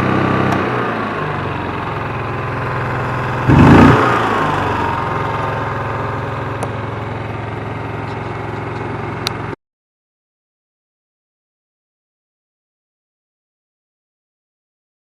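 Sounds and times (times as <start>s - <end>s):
generator engine running: 0.0s - 9.6s.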